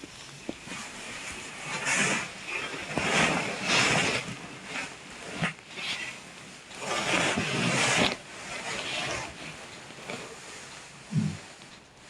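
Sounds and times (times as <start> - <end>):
soft breathing: 10.0 - 11.8
person snoring: 11.1 - 11.4.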